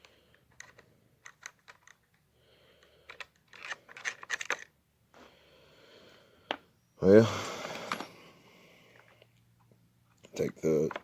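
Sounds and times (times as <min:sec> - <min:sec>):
rifle parts clicking and clattering: 0:00.3 - 0:02.2, 0:03.1 - 0:04.8.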